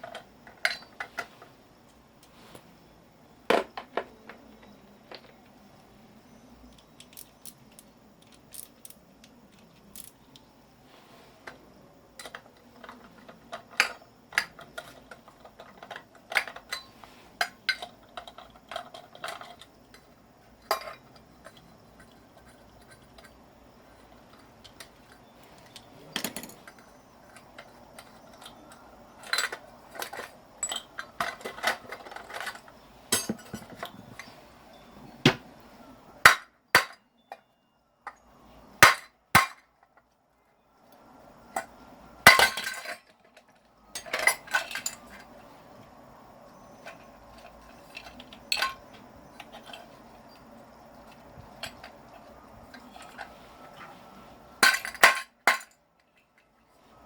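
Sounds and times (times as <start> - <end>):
hand tools knocking on metal: 33.1 - 34.0.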